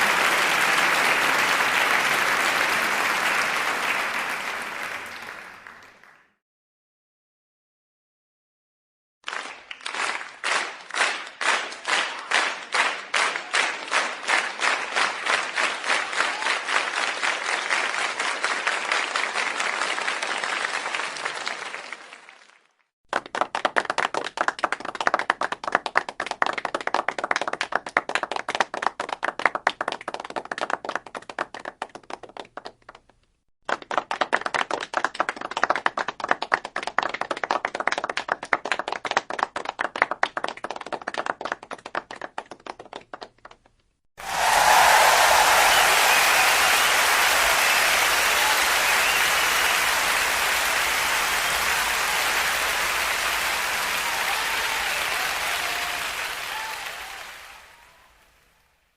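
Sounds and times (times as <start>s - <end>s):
crowd applause: 0.0s - 6.4s, 9.3s - 31.8s, 44.2s - 58.9s
crowd clapping in unison: 0.0s - 6.4s, 9.2s - 58.9s.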